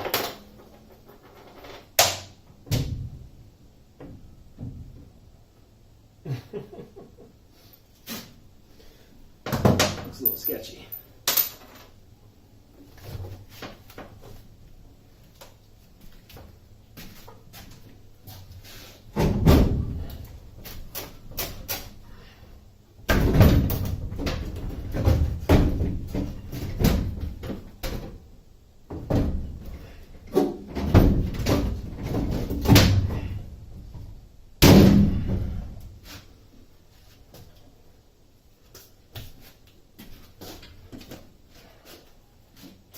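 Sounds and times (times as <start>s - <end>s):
metal clunks and rattles: 19.1s - 20.2s, 23.1s - 28.2s, 28.9s - 34.0s.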